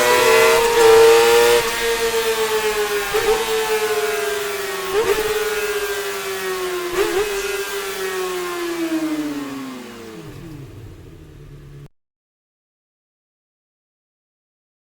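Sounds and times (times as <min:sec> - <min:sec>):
motorcycle engine at high revs: 0:00.0 - 0:11.9.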